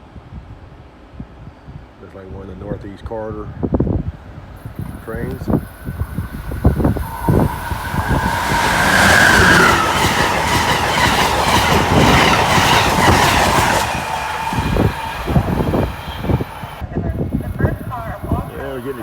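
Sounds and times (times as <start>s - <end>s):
train passing on rails: 4.3s - 19.0s.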